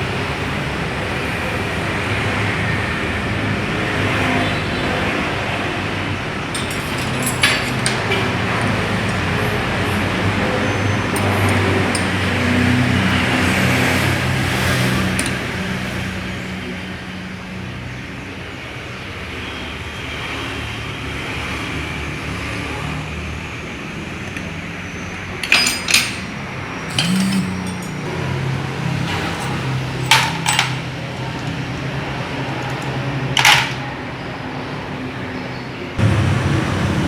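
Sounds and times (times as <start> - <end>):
metal tools clinking: 6.5 - 15.6, 25.2 - 28.1, 28.9 - 33.9.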